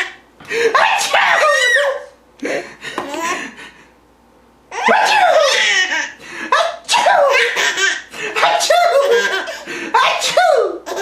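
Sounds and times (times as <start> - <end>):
baby laughing: 2.9 - 3.6, 4.7 - 11.0.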